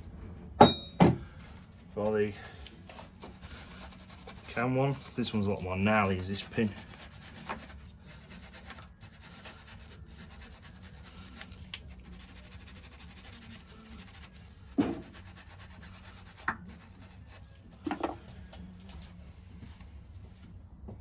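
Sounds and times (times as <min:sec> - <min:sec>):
hand tools scraping metal: 0:03.2 - 0:11.2.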